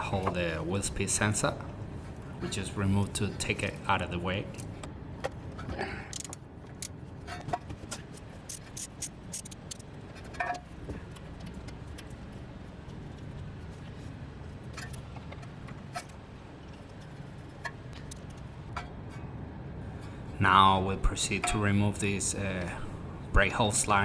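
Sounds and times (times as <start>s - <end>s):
steady low hum: 0.0s - 24.0s
hand tools clicking on metal: 6.1s - 6.9s.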